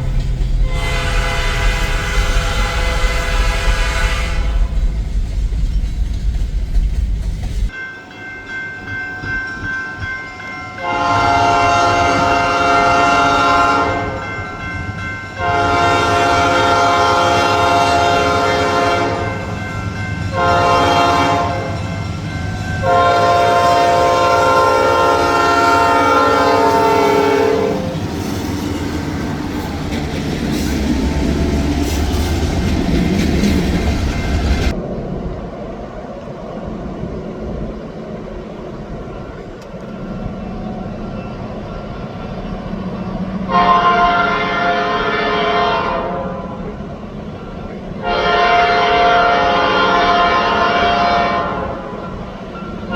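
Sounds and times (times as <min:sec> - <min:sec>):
passing train rumble and clatter: 0:00.0 - 0:52.9
locomotive air horn blasts: 0:00.6 - 0:04.8, 0:10.8 - 0:14.2, 0:15.4 - 0:19.5, 0:20.3 - 0:21.8, 0:22.6 - 0:28.0, 0:43.5 - 0:46.5, 0:48.0 - 0:51.9.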